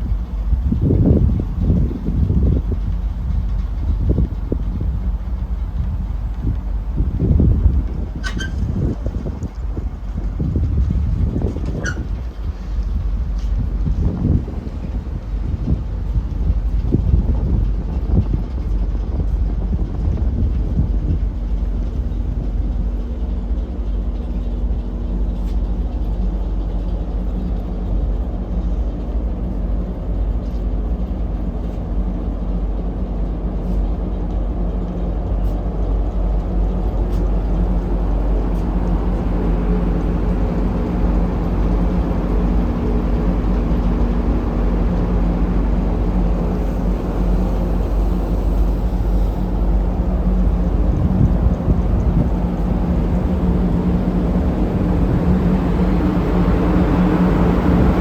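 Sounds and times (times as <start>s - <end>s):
ship engine droning: 0.0s - 58.0s
rushing hiss: 37.7s - 58.0s.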